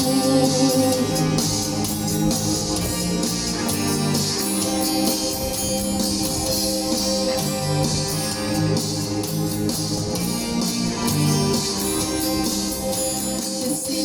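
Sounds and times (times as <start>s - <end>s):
strummed guitar music: 0.0s - 14.0s.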